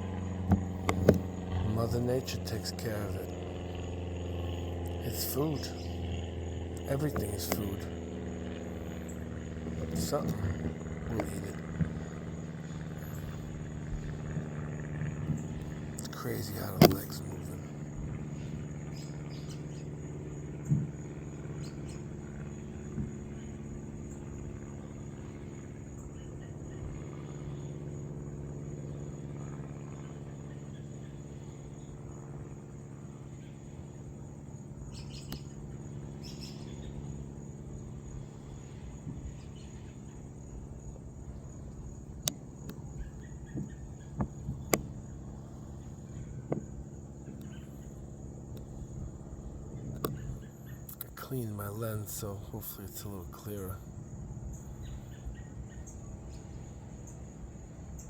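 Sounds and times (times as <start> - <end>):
high-pitched insect trill: 0.0 - 51.2
low steady hum: 0.0 - 58.0
sharp clicks: 6.8 - 7.8, 15.6 - 17.6, 49.9 - 53.7.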